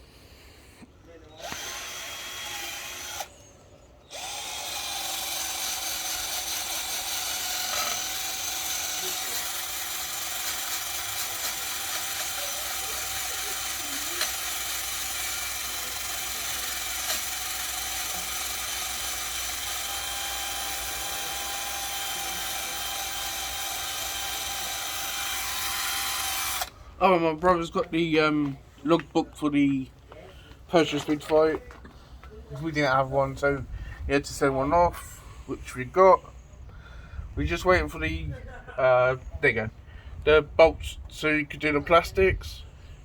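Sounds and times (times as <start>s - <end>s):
drill with wire wheel scrubbing metal: 1.3s - 3.5s, 4.1s - 26.8s.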